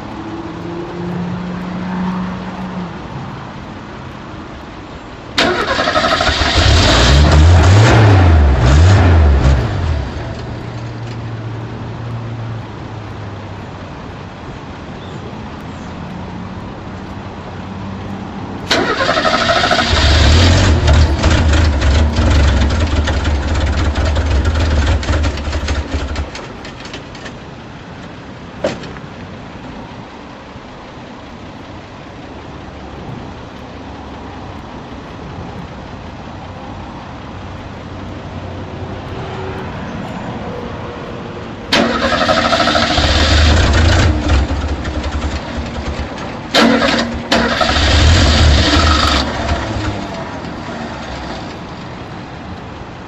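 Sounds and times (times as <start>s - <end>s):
car engine starting and revving: 5.3s - 10.9s, 18.6s - 26.7s, 41.7s - 51.8s.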